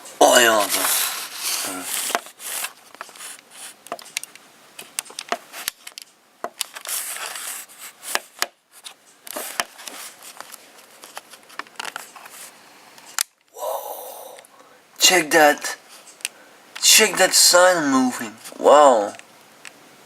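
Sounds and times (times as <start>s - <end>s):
sharp clicks and crackles: 2.0s - 7.2s, 8.1s - 12.4s.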